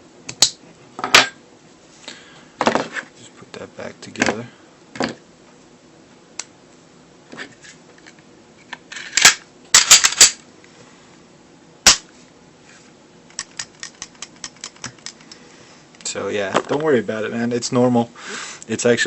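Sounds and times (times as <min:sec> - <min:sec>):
pistol parts clicking: 0:13.3 - 0:15.3.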